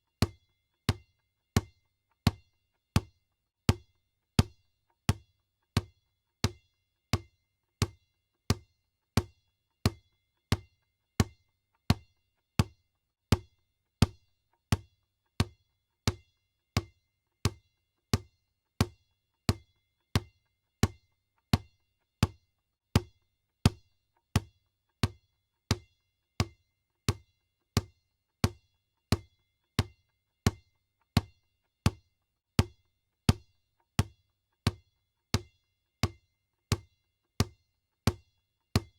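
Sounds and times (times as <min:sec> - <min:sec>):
basketball bouncing on floor: 0:24.4 - 0:25.8, 0:26.4 - 0:28.6.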